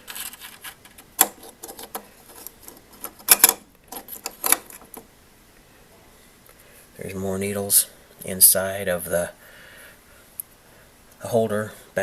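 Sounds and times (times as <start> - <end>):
metallic clicks and rattles: 0.1 - 5.1.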